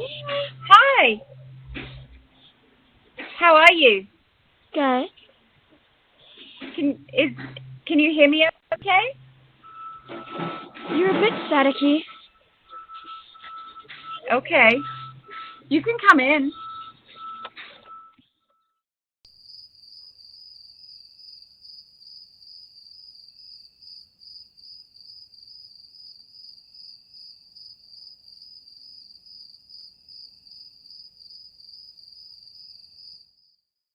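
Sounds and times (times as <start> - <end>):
crickets chirping: 19.3 - 33.6.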